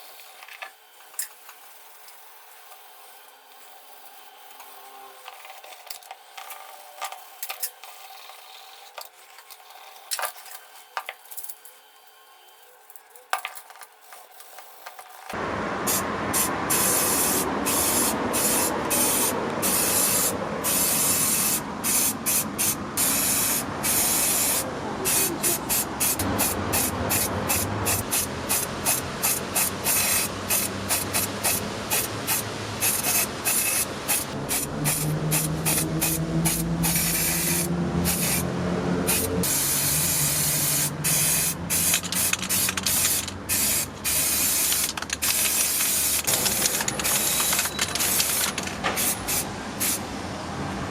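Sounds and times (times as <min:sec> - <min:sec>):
paint spray hissing: 0:15.9 - 0:50.0.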